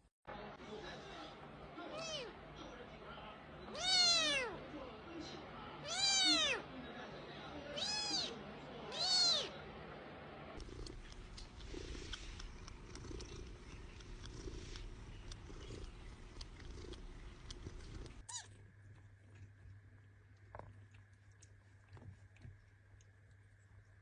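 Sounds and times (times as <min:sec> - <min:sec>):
cat meowing: 0:01.9 - 0:02.3, 0:03.7 - 0:04.6, 0:05.8 - 0:06.6, 0:07.7 - 0:09.5
cat purring: 0:10.6 - 0:24.0.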